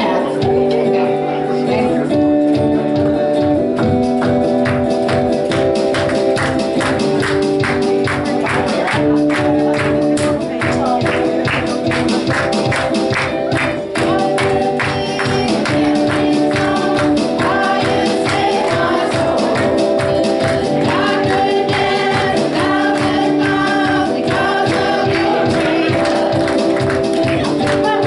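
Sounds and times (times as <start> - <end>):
voices singing: 0.0 - 2.2, 8.3 - 28.0
worship band playing: 0.0 - 28.0.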